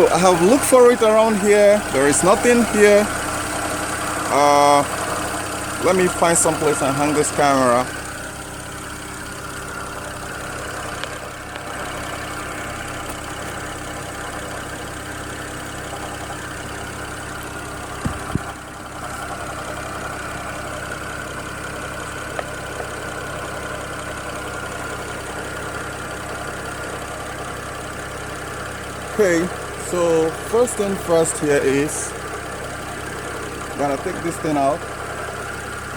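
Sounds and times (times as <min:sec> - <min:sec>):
car engine idling: 0:00.0 - 0:35.9
brief knocks: 0:18.0 - 0:18.6.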